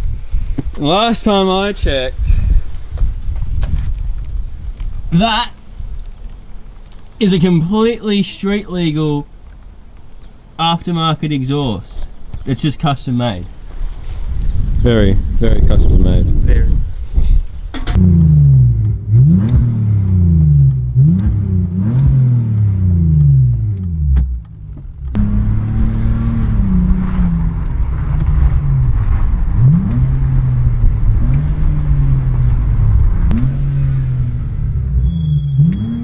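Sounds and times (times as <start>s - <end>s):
car engine revving: 17.9s - 36.0s.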